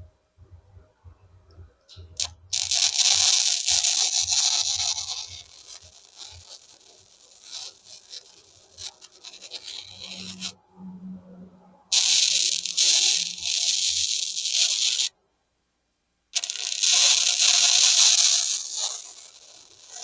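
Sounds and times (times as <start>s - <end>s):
electric arc welding crackling: 1.9s - 10.6s, 11.9s - 15.1s, 16.3s - 20.0s.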